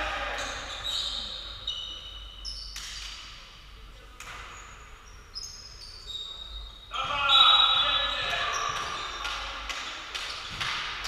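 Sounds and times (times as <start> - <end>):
sports shoes squeaking on court: 0.3 - 3.3, 4.3 - 9.2.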